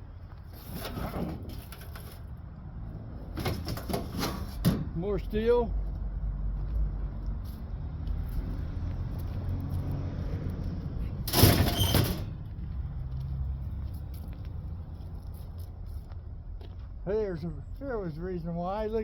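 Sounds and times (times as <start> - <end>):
loud scraping clatter: 0.6 - 2.3, 3.4 - 4.8, 11.3 - 12.4.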